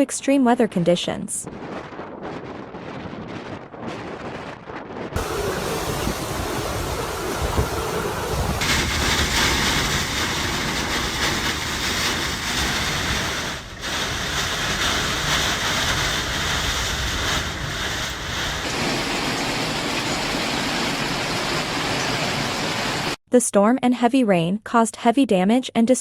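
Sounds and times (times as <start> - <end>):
rushing wind: 1.4 - 23.2
surf or rain: 5.2 - 23.2.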